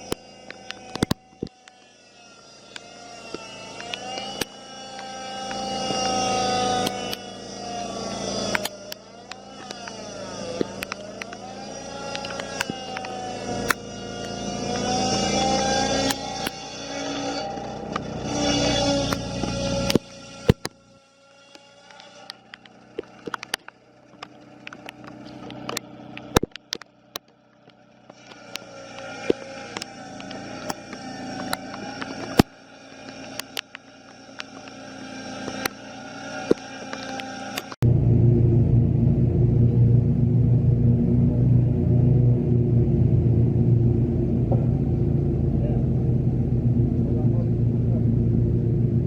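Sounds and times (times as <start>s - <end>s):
sharp clicks and knocks: 0.0s - 1.8s, 8.5s - 16.6s, 19.0s - 20.8s, 21.5s - 37.8s
circular blade cutting wood: 0.0s - 49.0s
sawmill engine running: 0.0s - 49.0s
sharp ticks: 21.4s - 37.8s.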